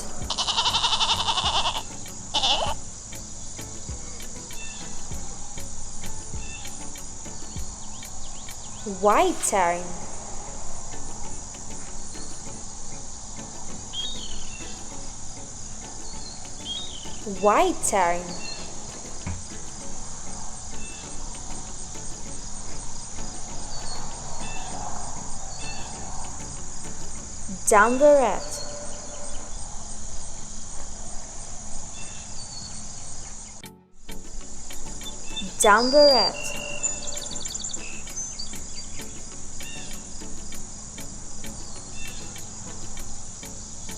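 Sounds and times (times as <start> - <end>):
bird call: 0.0 - 8.9, 27.9 - 33.7, 34.7 - 43.9
crickets chirring: 0.0 - 43.9
faint short chirps: 36.4 - 39.0.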